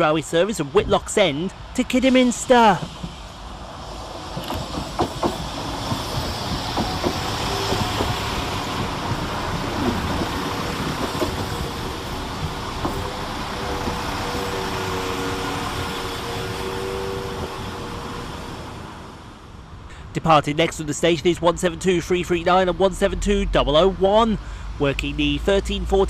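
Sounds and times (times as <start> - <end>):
diesel train rumble: 0.0 - 26.0
wheels clicking over rail joints: 4.2 - 15.0.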